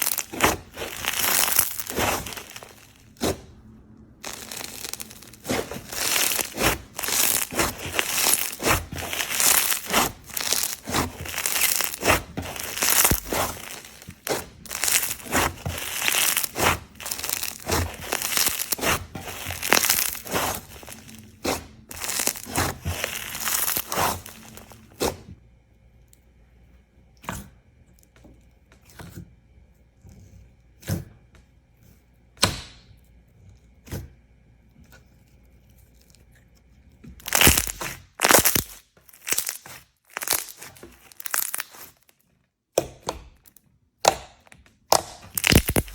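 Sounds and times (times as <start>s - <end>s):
slime crackling and popping: 0.0s - 3.5s, 4.2s - 25.1s, 37.2s - 42.1s, 42.8s - 45.9s.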